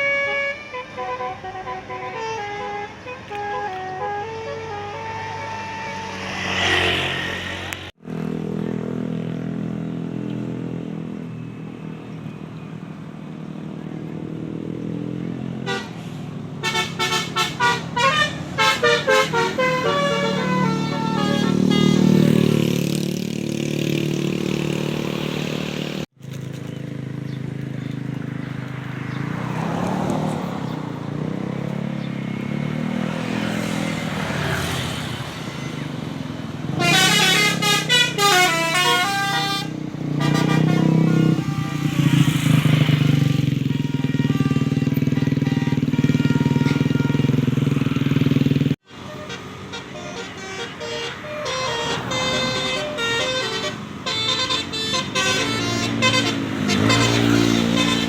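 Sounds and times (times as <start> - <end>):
musical bus horns trilling: 0.0 - 8.0, 15.5 - 26.1, 32.5 - 58.0
bus engines running: 0.0 - 58.0.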